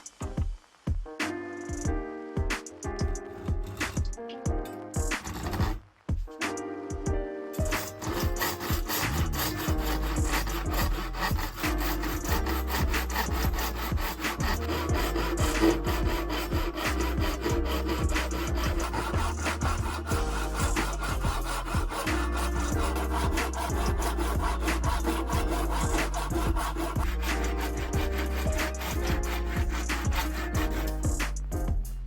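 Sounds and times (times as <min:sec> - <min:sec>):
hand saw cutting wood: 0:03.4 - 0:04.0, 0:05.1 - 0:05.8, 0:07.7 - 0:31.5.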